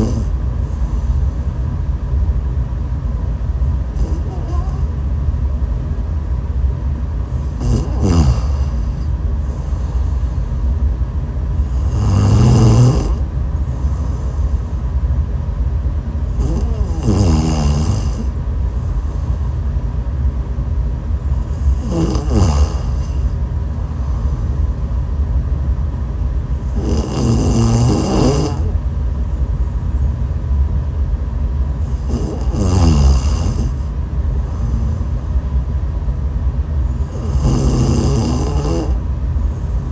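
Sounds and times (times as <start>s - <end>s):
person snoring: 0.0s - 0.4s, 3.9s - 4.9s, 7.4s - 10.4s, 11.6s - 14.6s, 16.3s - 18.4s, 21.4s - 23.4s, 26.7s - 28.8s, 31.8s - 35.1s, 36.9s - 39.0s
steady low rumble: 0.0s - 39.9s.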